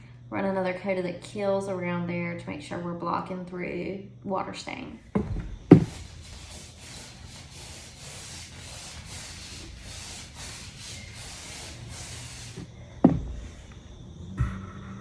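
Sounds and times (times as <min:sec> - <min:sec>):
rhythmic rubbing hiss: 0:05.6 - 0:13.7.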